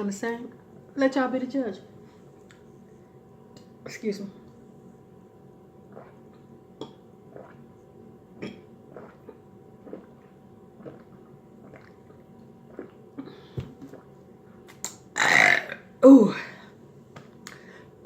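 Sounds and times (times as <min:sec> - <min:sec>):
person gulping water: 0:05.8 - 0:15.8.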